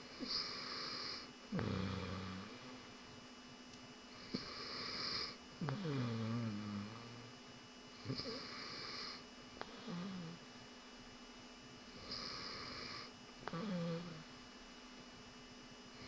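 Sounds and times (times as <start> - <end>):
man snoring: 0.1 - 2.8, 4.2 - 7.3, 8.0 - 10.4, 12.0 - 14.3.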